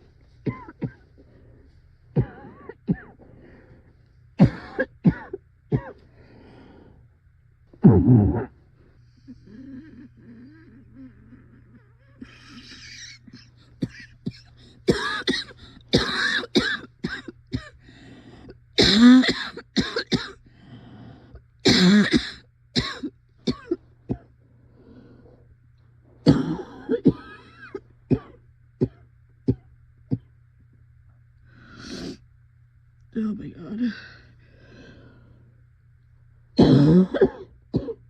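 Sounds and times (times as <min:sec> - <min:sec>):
person coughing: 0:00.4 - 0:01.1, 0:02.2 - 0:03.3, 0:04.4 - 0:06.0, 0:07.8 - 0:08.5, 0:09.4 - 0:17.8, 0:18.8 - 0:20.4, 0:21.6 - 0:24.3, 0:26.2 - 0:30.3, 0:36.6 - 0:38.0.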